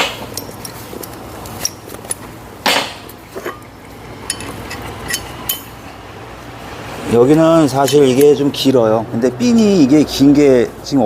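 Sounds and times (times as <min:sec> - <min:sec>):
light metal clinks: 0:00.2 - 0:02.3, 0:02.9 - 0:05.8
sharp metal clank: 0:01.6 - 0:05.8.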